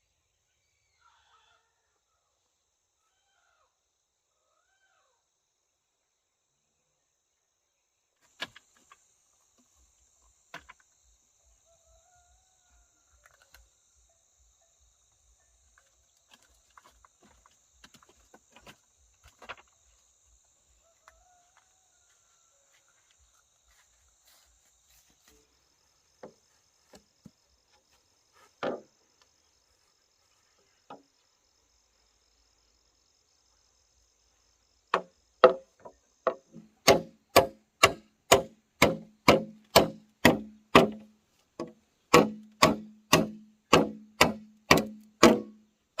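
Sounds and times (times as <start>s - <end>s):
faint wavering animal calls: 0.5s - 5.4s
insects chirring: 4.4s - 46.0s
sharp knocks and clicks: 34.9s - 45.5s.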